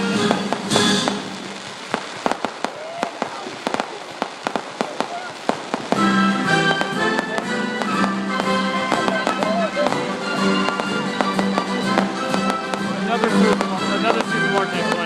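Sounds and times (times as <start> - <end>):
music: 0.0 - 1.9, 5.8 - 15.0
fireworks crackling: 0.0 - 15.0.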